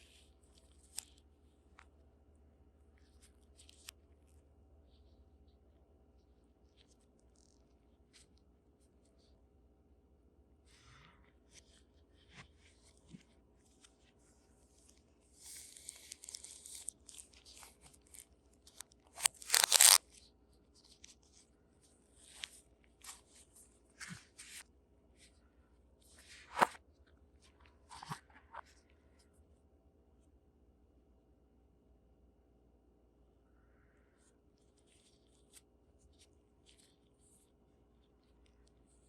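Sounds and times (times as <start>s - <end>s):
packaging rustling and crinkling: 15.4s - 20.0s.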